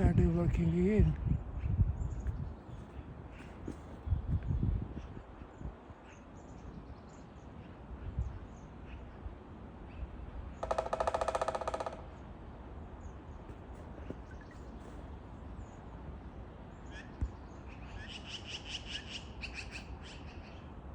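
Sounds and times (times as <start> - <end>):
woodpecker drumming on wood: 10.6 - 12.3.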